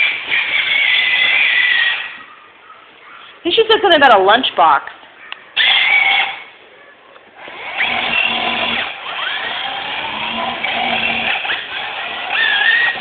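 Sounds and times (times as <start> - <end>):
small motor whirring: 7.4 - 13.0.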